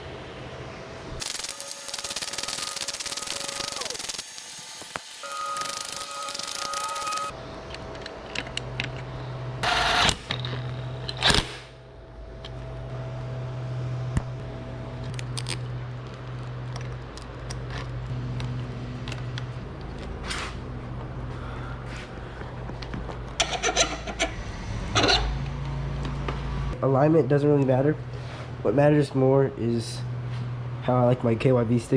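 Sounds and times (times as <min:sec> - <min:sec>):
loud rasping bursts: 0:01.2 - 0:07.3
tools and bike parts clicking: 0:04.9 - 0:09.1
steady low hum: 0:10.3 - 0:31.9.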